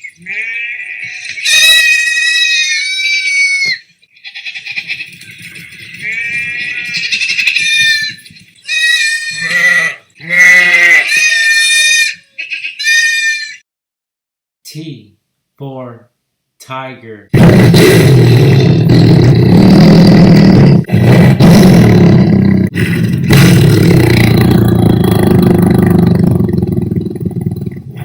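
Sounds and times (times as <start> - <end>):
sheep bleating: 0.2 - 5.1, 6.0 - 13.6.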